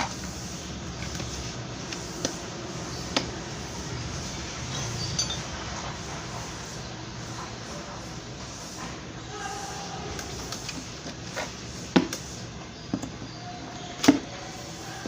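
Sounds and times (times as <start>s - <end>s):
metal parts clinking: 4.7s - 5.6s.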